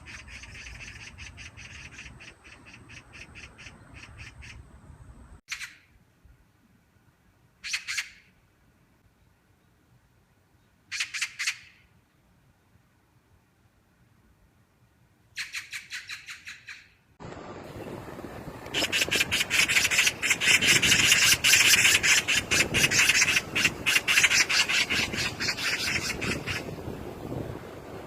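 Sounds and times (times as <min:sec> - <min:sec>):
magpie chattering: 0:00.0 - 0:04.6, 0:10.9 - 0:11.8, 0:15.4 - 0:16.9, 0:18.8 - 0:26.7
background hiss: 0:00.0 - 0:28.0.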